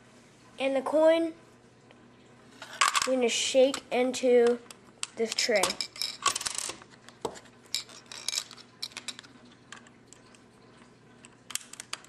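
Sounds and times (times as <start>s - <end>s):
coin clattering in plastic machine: 2.7s - 3.2s, 5.3s - 6.8s, 7.8s - 9.3s.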